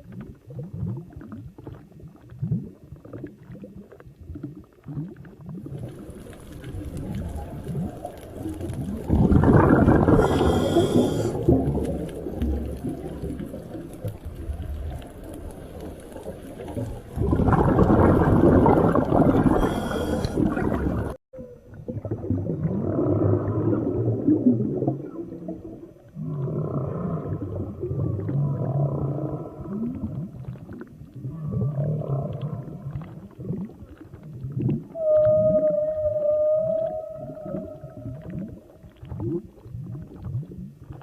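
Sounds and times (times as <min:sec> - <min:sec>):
low rough underwater rumbling: 0:00.0 - 0:41.0
short gliding calls: 0:10.1 - 0:11.4, 0:19.5 - 0:20.5.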